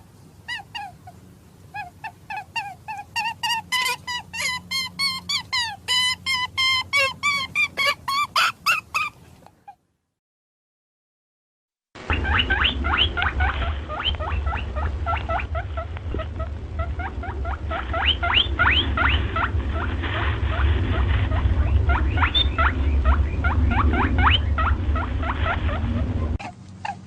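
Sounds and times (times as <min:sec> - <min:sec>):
rabbit squeaking: 0:00.0 - 0:09.8, 0:12.0 - 0:27.0
steady low rumble: 0:12.0 - 0:27.0.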